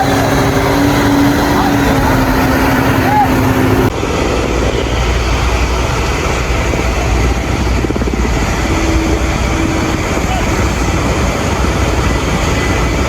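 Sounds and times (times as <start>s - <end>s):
aircraft drone: 0.0s - 13.0s.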